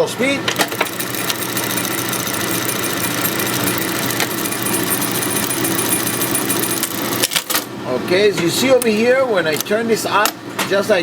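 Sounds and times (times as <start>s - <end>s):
sewing machine stitching clatter: 0.6s - 7.7s.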